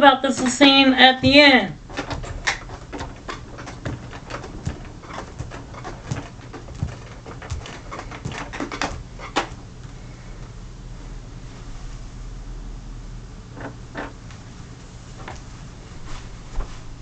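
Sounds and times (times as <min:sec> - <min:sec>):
low steady hum: 0:00.0 - 0:17.0
light clicks and knocks: 0:00.2 - 0:10.0.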